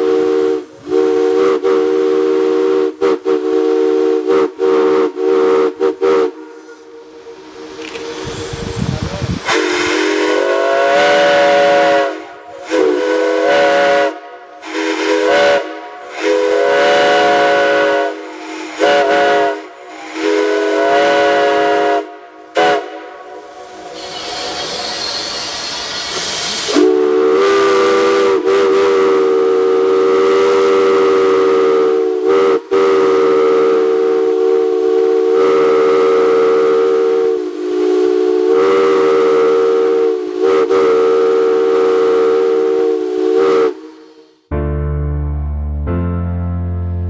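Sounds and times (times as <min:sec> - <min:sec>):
hissing steam: 0:00.0 - 0:44.5
steam whistle blasts: 0:00.0 - 0:44.5.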